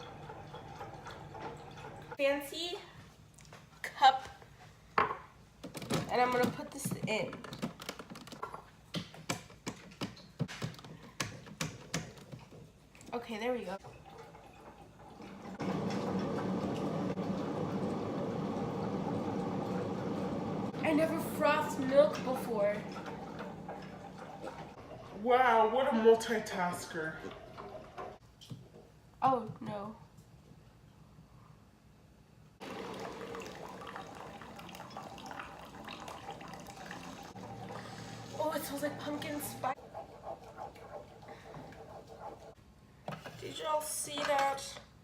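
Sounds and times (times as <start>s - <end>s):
milk frother whirring: 14.4s - 25.1s, 32.6s - 42.6s
liquid splashing and dripping: 32.6s - 38.4s.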